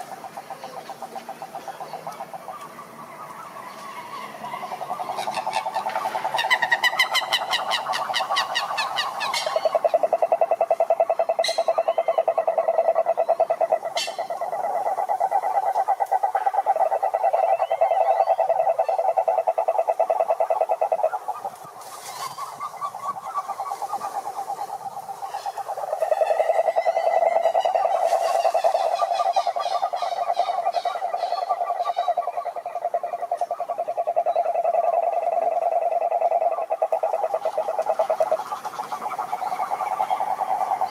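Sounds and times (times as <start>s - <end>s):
frogs calling in chorus: 0.0s - 40.9s
higher-pitched frog calls: 0.0s - 40.9s.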